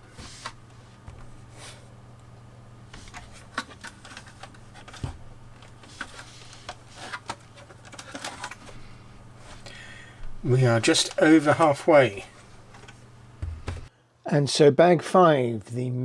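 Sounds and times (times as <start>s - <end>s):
packaging rustling: 3.0s - 9.0s.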